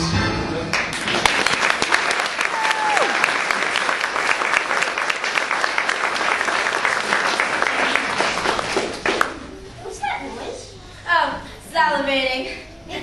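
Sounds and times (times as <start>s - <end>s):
audience applauding: 0.7s - 9.5s.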